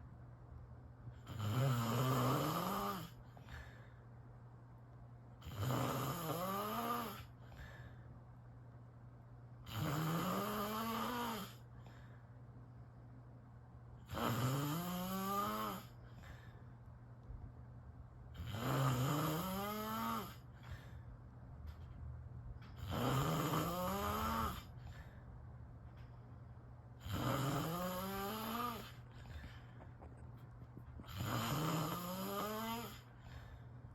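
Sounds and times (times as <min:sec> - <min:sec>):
steady low hum: 0:00.0 - 0:33.9
person snoring: 0:01.3 - 0:03.2, 0:05.4 - 0:07.3, 0:09.7 - 0:11.6, 0:14.1 - 0:16.0, 0:18.4 - 0:20.4, 0:22.8 - 0:24.7, 0:27.0 - 0:29.1, 0:31.0 - 0:33.1.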